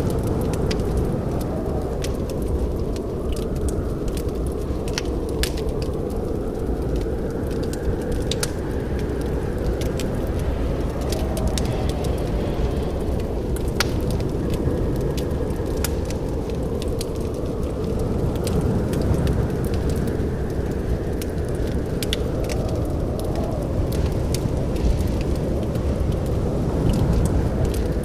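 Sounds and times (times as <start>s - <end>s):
low rumble of burning: 0.0s - 28.0s
wood fire crackling and popping: 0.0s - 28.0s.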